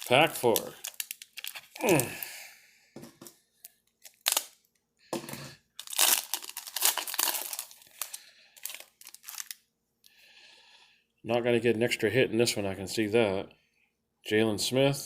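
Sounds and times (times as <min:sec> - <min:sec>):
foil wrapper tearing and crinkling: 0:00.0 - 0:02.3, 0:04.0 - 0:04.6, 0:05.8 - 0:09.6.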